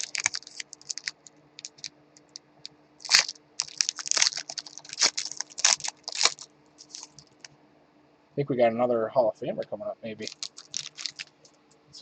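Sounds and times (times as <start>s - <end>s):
wrapper ripping: 0.0s - 1.9s, 3.0s - 7.4s, 10.2s - 11.3s
wrapper crinkling: 0.0s - 2.4s, 3.0s - 7.5s, 10.2s - 11.4s.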